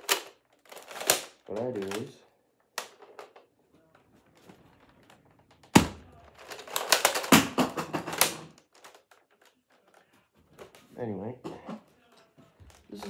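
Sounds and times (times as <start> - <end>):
plastic toy blaster clicking: 6.4 - 7.4.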